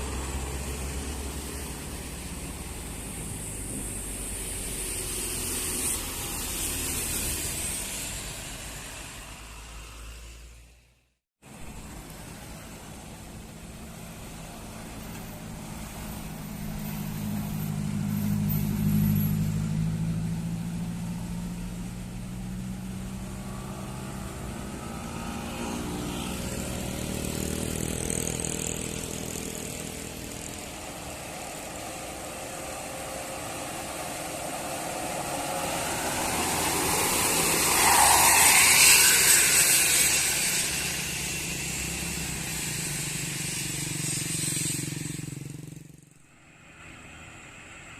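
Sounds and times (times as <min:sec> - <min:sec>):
vehicles passing uphill: 0:00.0 - 0:47.9
engine rising in pitch: 0:14.2 - 0:47.9.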